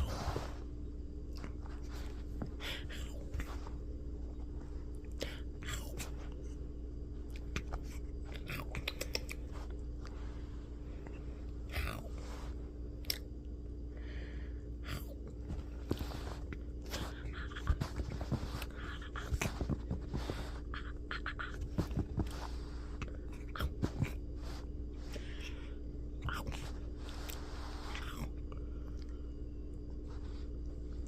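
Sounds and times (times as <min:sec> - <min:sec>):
steady low hum: 0:00.0 - 0:31.0.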